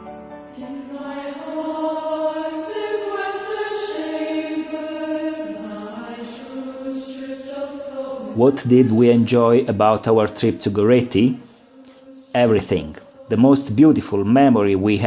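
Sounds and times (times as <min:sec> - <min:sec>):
choir singing plainchant: 0:00.5 - 0:15.0.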